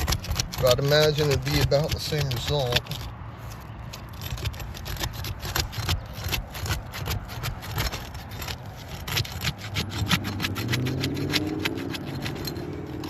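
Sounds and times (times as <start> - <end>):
tool scraping shingle: 0.0 - 13.0
low engine hum: 8.3 - 13.0.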